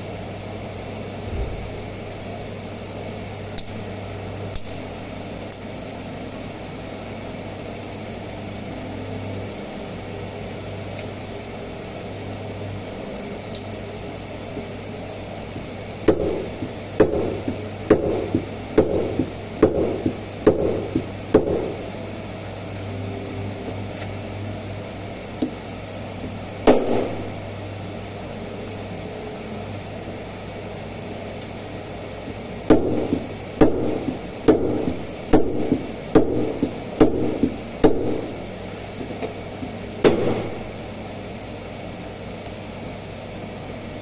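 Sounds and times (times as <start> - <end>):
hammer knocking on sheet metal: 16.1 - 21.8, 32.7 - 38.3.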